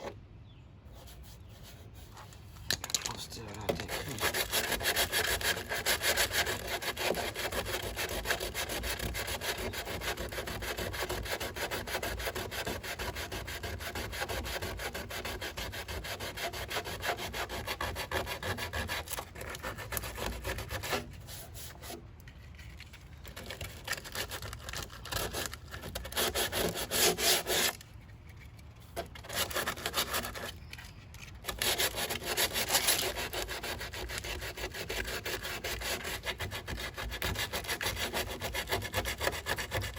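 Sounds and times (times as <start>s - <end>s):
sandpaper sanding body filler: 3.7s - 22.0s, 31.5s - 39.9s.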